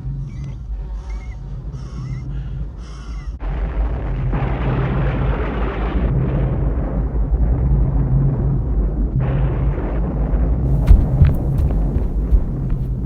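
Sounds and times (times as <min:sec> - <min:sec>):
steady low hum: 0:10.7 - 0:13.0.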